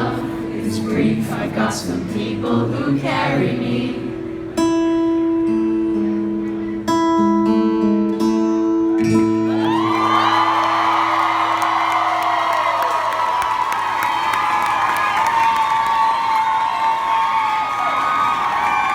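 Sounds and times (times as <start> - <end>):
crowd cheering and screaming: 9.5 - 18.9.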